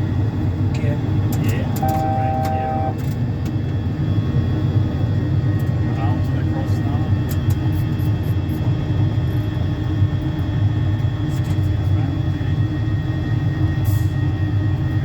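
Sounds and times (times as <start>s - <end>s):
low jet engine rumble: 0.0s - 15.0s
faint steady tones: 0.1s - 7.1s.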